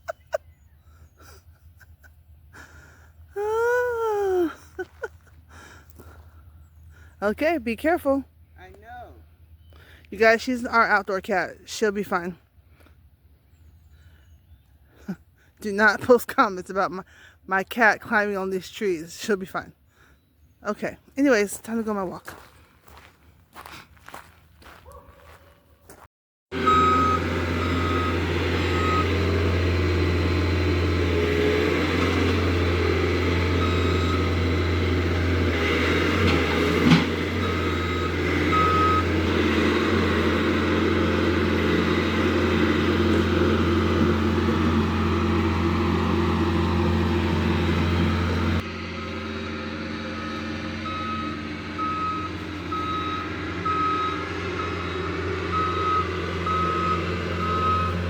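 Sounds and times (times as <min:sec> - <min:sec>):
diesel truck running: 0:00.0 - 0:25.0, 0:26.5 - 0:58.0
backup alarm beeping: 0:26.6 - 0:29.2, 0:33.5 - 0:34.8, 0:37.2 - 0:43.2, 0:50.1 - 0:58.0.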